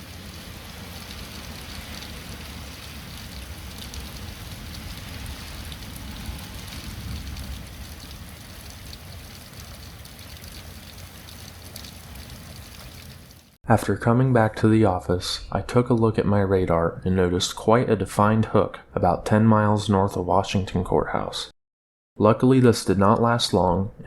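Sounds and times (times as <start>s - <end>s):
heavy rain hissing: 0.0s - 13.6s
low thunder rumble: 0.1s - 12.5s.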